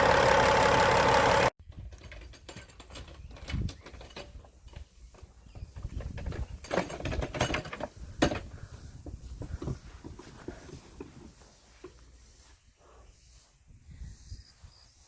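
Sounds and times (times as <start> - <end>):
knocks and clatter: 1.7 - 8.5.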